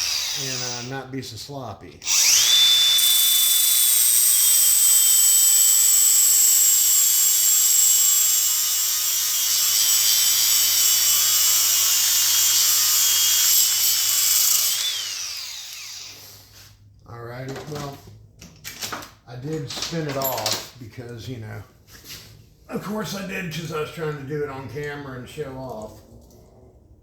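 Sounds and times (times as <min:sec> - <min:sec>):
electric drill sanding metal: 0:00.0 - 0:00.9, 0:02.0 - 0:16.3.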